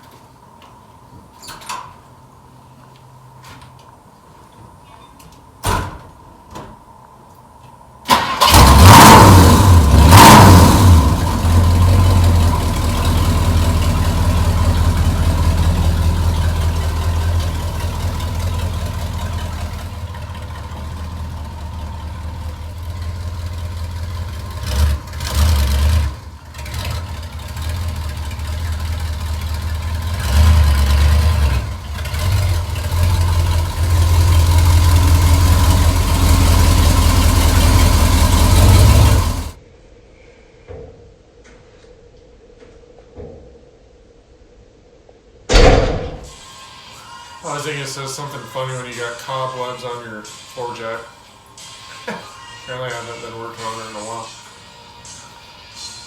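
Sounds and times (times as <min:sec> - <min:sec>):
car engine starting and idling: 0:08.0 - 0:39.6.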